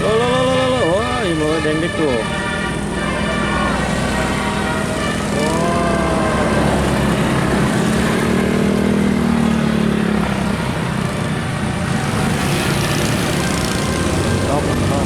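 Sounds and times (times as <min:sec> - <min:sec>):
engine and road noise: 0:00.0 - 0:15.0.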